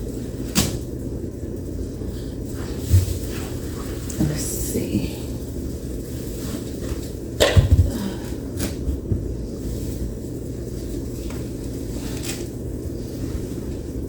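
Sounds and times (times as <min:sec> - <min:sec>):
steady low rumble: 0:00.0 - 0:14.0
furniture parts knocking: 0:07.4 - 0:08.2.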